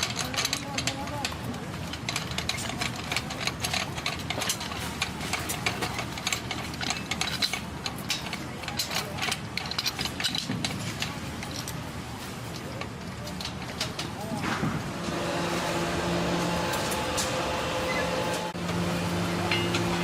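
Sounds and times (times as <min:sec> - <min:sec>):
ratcheting clicks and ticks: 0:00.0 - 0:11.8
machinery humming: 0:00.0 - 0:20.0.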